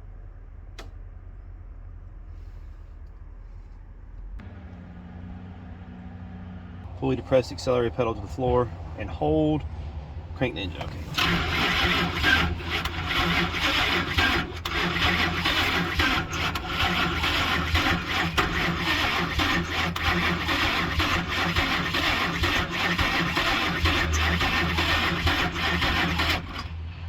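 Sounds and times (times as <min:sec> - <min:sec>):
engine cranking without starting: 0:07.0 - 0:26.9.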